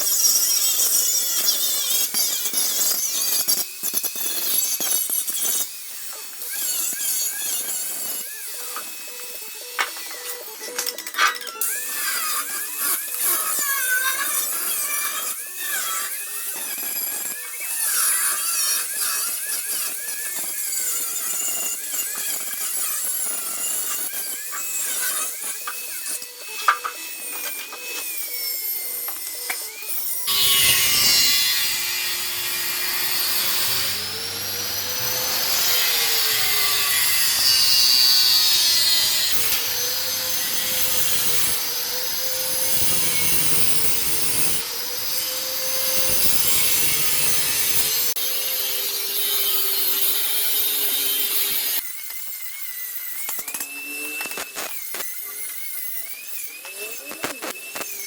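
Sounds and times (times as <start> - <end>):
power tool grinding metal: 0.0 - 58.0.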